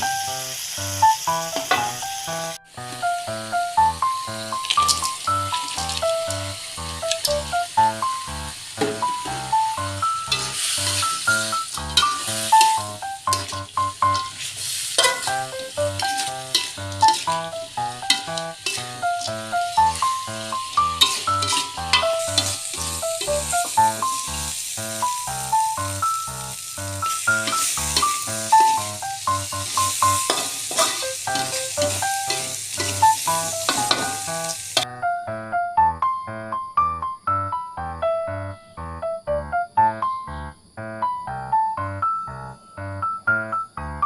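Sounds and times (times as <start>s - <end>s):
food sizzling in a pan: 0.0s - 34.9s
instrumental background music: 0.0s - 44.0s.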